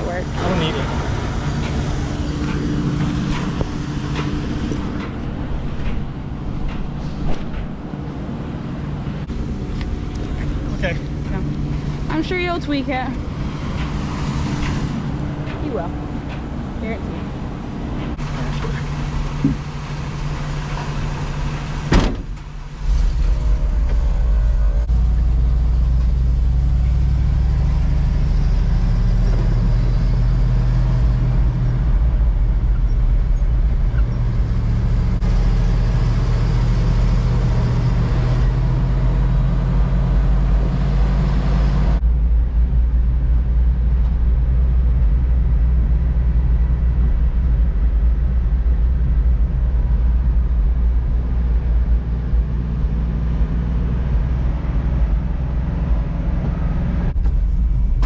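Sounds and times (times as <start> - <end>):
truck engine rumble: 0.0 - 58.0
vehicle door shutting: 3.3 - 7.8, 21.9 - 24.0.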